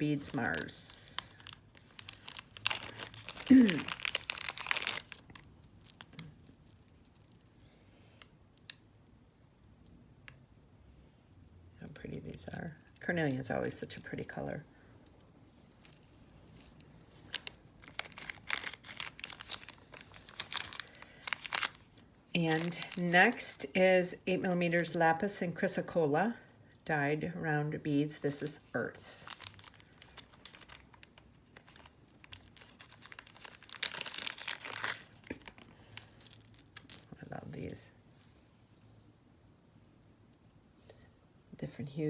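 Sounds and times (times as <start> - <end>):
plastic packaging crinkling: 0.0 - 7.8, 12.4 - 14.6, 15.6 - 23.5, 28.9 - 38.9.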